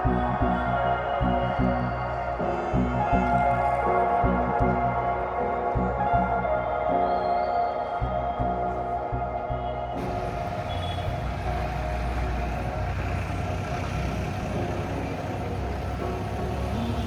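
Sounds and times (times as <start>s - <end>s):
soft ambient music: 0.0s - 17.0s
road traffic rumble: 10.0s - 17.0s.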